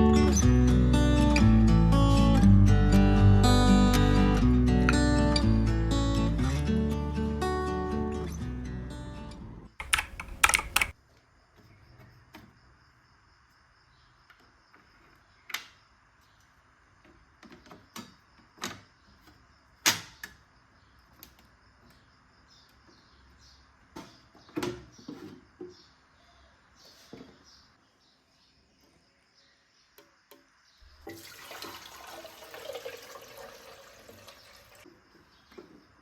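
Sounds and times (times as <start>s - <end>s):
guitar music: 0.0s - 9.6s
sharp clicks: 9.8s - 11.0s.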